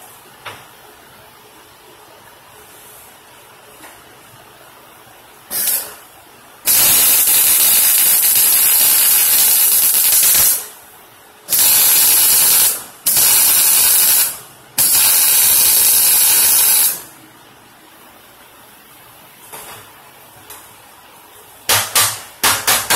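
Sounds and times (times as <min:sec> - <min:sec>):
welding arc hissing: 0:05.5 - 0:06.0, 0:06.6 - 0:10.8, 0:11.5 - 0:17.1.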